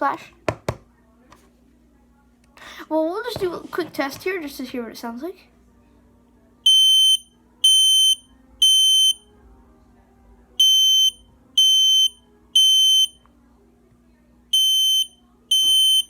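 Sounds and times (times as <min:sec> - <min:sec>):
smoke alarm beeping: 0:06.7 - 0:09.2, 0:10.6 - 0:13.2, 0:14.6 - 0:16.0.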